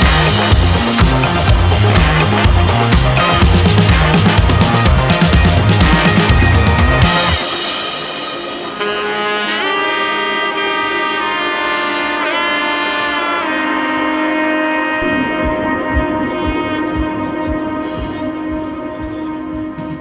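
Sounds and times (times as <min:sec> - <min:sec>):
saxophone-like melody: 0:00.0 - 0:20.0
soft low beat: 0:15.0 - 0:20.0.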